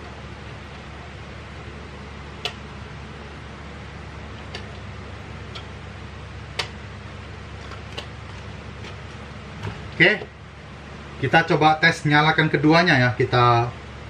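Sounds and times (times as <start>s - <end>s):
steady background hiss: 0.0s - 14.0s
sharp clicks of hard objects: 6.6s - 6.8s.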